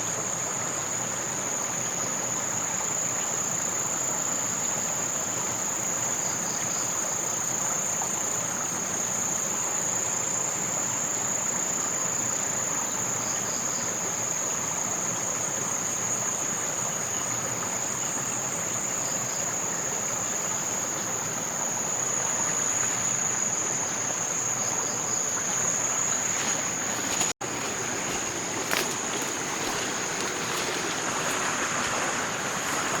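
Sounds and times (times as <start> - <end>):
insects droning: 0.0 - 33.0
rushing hiss: 25.4 - 33.0.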